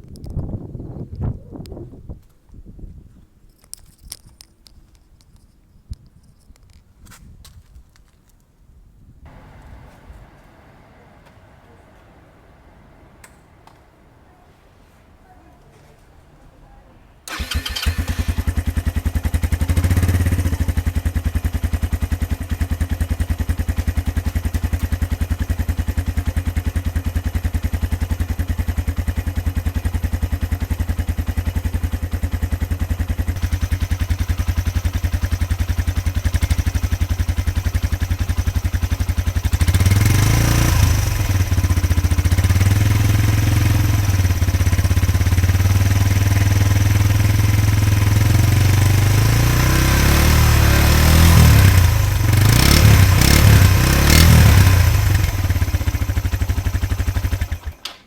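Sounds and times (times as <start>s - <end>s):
motorcycle engine idling: 9.3s - 13.7s, 17.3s - 57.8s
engine cranking: 17.2s - 21.9s, 31.4s - 58.0s
engine revving: 17.3s - 23.6s, 32.6s - 57.8s.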